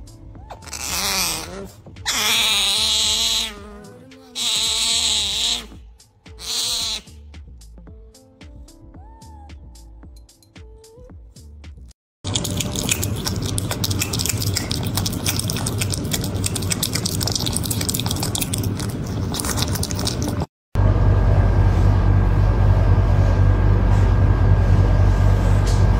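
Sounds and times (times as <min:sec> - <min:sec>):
otter clicking and crackling: 0:12.3 - 0:20.5
steady low hum: 0:12.3 - 0:25.9.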